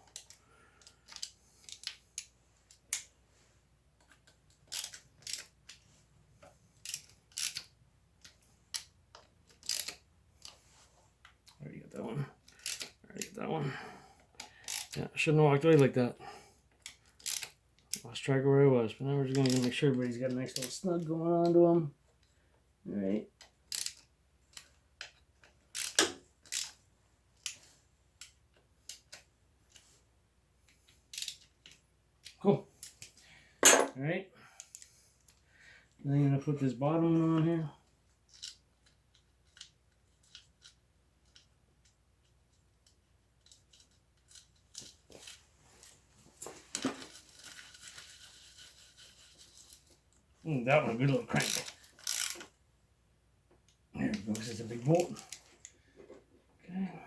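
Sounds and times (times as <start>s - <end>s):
metallic clicks and clinks of tools: 0.1s - 3.1s, 4.0s - 5.8s, 6.8s - 10.6s, 12.5s - 13.0s, 14.4s - 15.0s, 16.8s - 18.0s, 19.4s - 19.8s, 23.4s - 26.8s, 31.1s - 33.9s, 51.3s - 52.6s, 53.7s - 55.8s
hand tool metal clicks: 9.5s - 10.0s, 51.4s - 52.4s.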